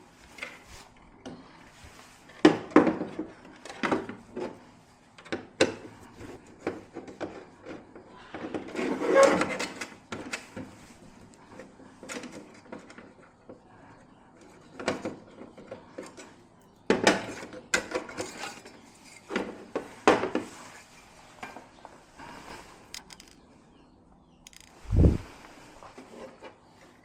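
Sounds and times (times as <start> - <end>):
tools clinking and knocking: 22.9 - 23.4, 24.5 - 24.8.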